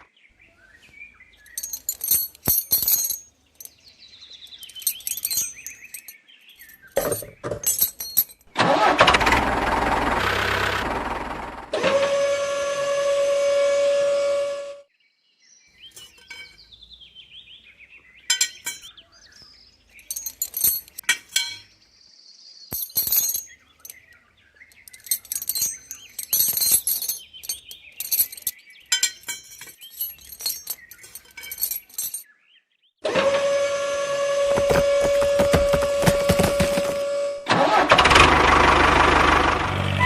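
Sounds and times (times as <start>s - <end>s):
light clinks and clicks: 1.4s - 8.6s, 15.9s - 16.7s, 18.3s - 19.0s, 19.9s - 21.7s, 22.7s - 32.3s.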